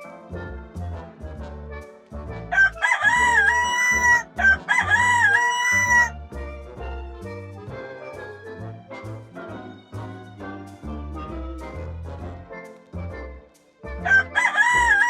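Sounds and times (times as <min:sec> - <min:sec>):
swing-style background music: 0:00.0 - 0:15.0
rooster crowing: 0:02.5 - 0:06.2, 0:14.0 - 0:15.0.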